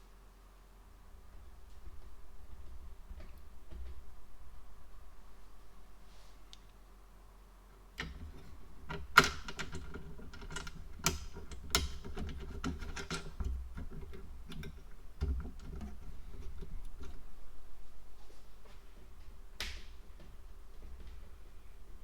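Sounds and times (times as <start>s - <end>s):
small hardware clicking and knocking: 8.0s - 17.2s.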